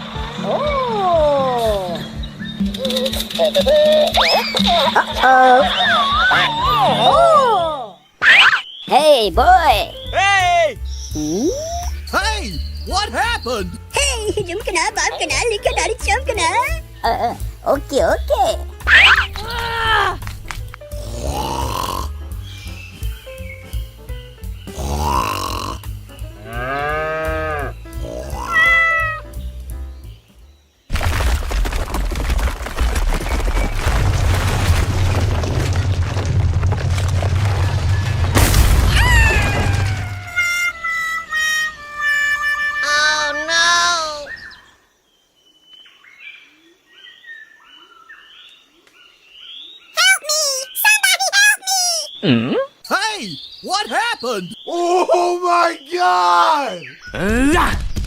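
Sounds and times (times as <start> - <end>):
music: 0.0 - 8.0, 9.0 - 30.7
birds chirping: 0.0 - 30.9, 37.8 - 58.0
animal-like cries: 26.5 - 29.3, 38.9 - 44.4.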